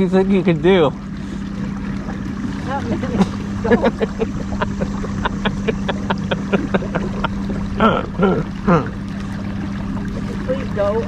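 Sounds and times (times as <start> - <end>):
small boat motor humming: 0.0 - 11.0.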